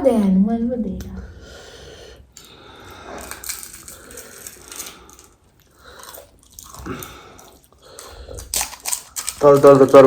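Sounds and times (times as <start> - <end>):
person chewing crunchy food: 2.4 - 10.0.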